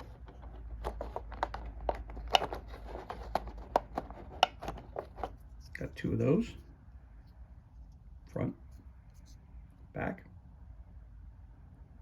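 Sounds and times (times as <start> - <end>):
plastic figures clicking and tapping: 0.0 - 5.4.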